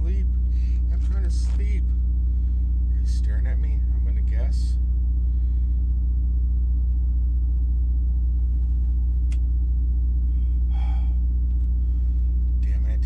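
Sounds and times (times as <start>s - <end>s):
vehicle interior rumble: 0.0s - 13.0s
sharp click: 9.2s - 9.5s.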